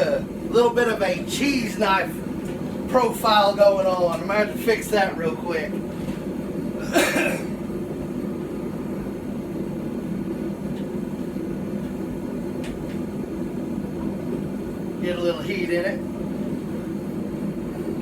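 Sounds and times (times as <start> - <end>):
short cough-like burst: 6.8 - 7.6.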